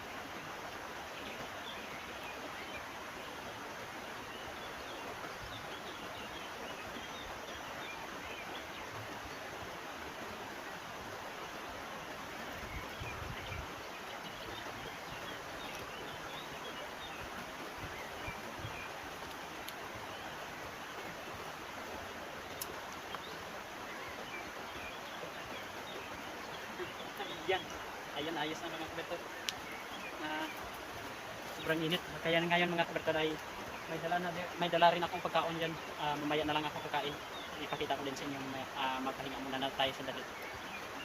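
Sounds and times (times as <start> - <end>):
river stream rushing: 0.0 - 41.0
faint bird chirps: 22.4 - 41.0.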